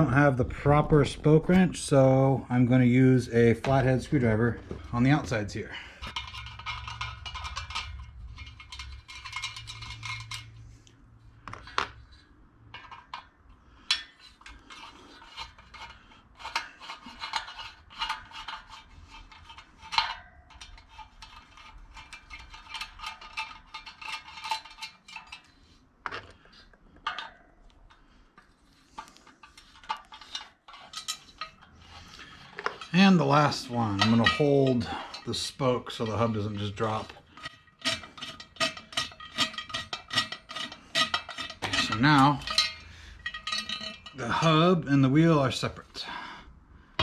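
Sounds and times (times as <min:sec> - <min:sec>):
metal spokes clinking: 0:03.3 - 0:10.9, 0:11.6 - 0:45.7
screwdriver scraping on spoke nipples: 0:28.6 - 0:44.6.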